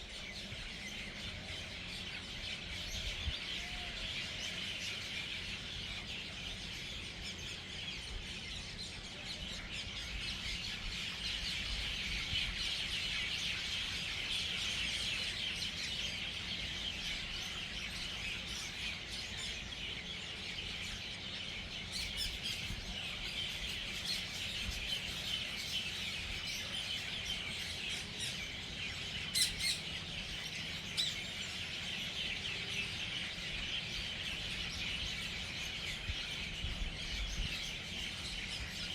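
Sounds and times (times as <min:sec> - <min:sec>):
flock of birds chattering: 0:00.0 - 0:38.9
sharp loud bird calls: 0:16.5 - 0:38.9.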